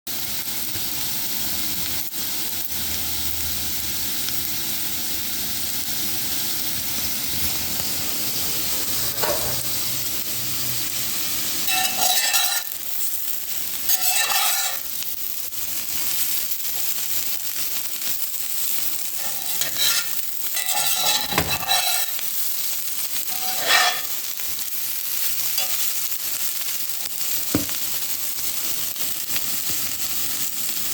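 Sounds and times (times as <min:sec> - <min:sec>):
potatoes sizzling in a frying pan: 0:00.1 - 0:30.9
utensil scraping a pan: 0:08.9 - 0:09.7, 0:11.6 - 0:13.0, 0:13.8 - 0:14.9, 0:19.1 - 0:22.4, 0:23.1 - 0:24.3, 0:25.5 - 0:25.9.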